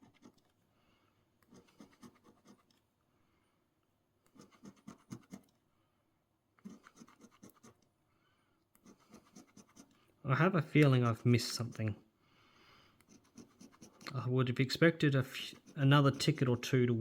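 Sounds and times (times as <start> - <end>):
scratching lottery ticket: 1.5 - 2.7, 4.3 - 5.5, 6.6 - 7.8, 8.8 - 9.9, 10.8 - 12.0, 13.0 - 14.3, 15.1 - 16.6.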